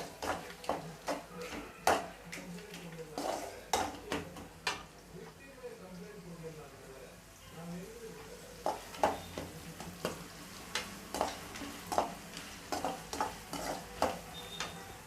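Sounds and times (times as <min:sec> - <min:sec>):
spoon scraping against pan: 0:00.0 - 0:04.5, 0:08.6 - 0:10.4, 0:11.1 - 0:15.0
onions sizzling in oil: 0:00.0 - 0:15.0.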